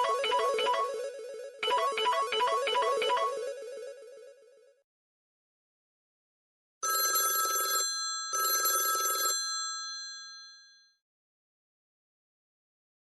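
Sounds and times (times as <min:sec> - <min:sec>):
phone ringtone bell ring: 0:06.8 - 0:11.0.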